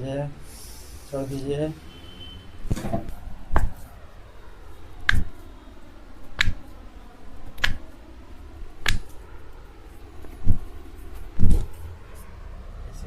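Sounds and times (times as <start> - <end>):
back cracking snaps: 2.7 - 3.9, 5.0 - 5.4, 6.3 - 6.7, 7.5 - 7.9, 8.8 - 9.2.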